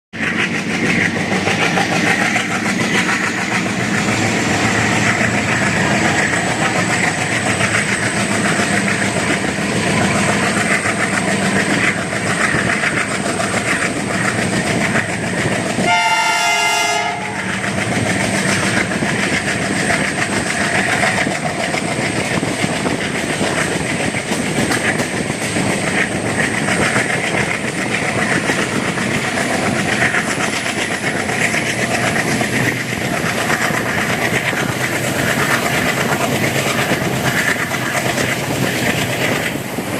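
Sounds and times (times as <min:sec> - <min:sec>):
diesel locomotive engine chugging: 0:00.2 - 0:39.9
wheels clattering on rails: 0:00.2 - 0:39.9
locomotive horn: 0:15.8 - 0:17.5.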